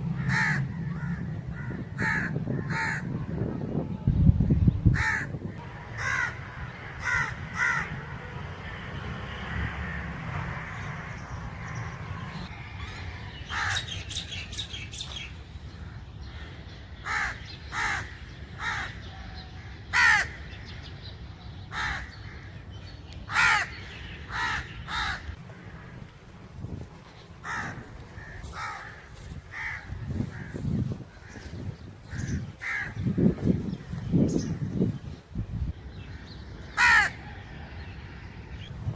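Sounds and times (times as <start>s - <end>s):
crows cawing: 0.0s - 3.4s, 4.9s - 13.8s, 16.4s - 19.0s, 19.9s - 20.4s, 21.7s - 22.5s, 23.3s - 34.9s, 36.8s - 37.2s.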